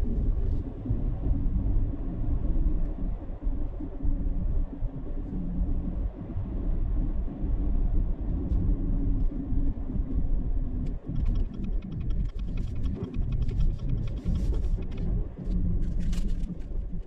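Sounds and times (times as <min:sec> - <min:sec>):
quick run of clicks: 0:11.1 - 0:15.1.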